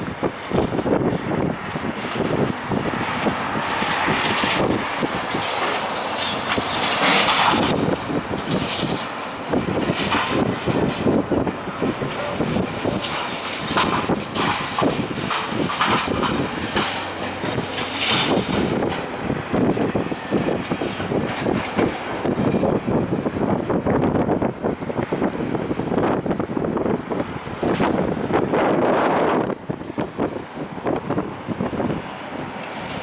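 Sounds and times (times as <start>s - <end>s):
masonry and rubble crashing down: 2.1s - 23.1s.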